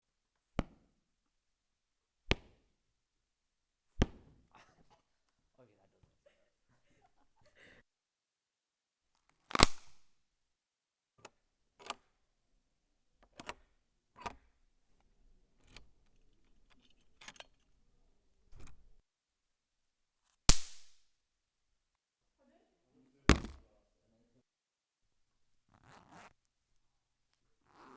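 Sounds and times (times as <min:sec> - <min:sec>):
loud snapping hits: 0:09.6 - 0:09.8, 0:20.5 - 0:20.9
objects knocking together: 0:23.3 - 0:23.6.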